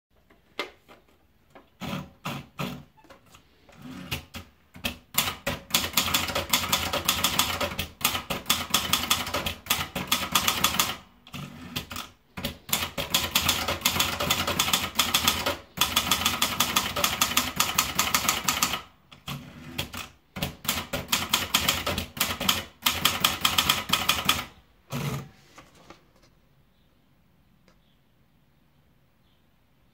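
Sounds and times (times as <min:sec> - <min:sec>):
typewriter keys clacking: 0:04.1 - 0:11.0, 0:11.7 - 0:24.5.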